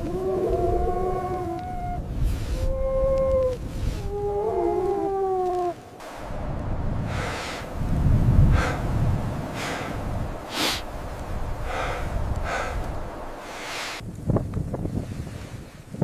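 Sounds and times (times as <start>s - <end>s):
heavy rasping breaths: 7.0s - 14.0s.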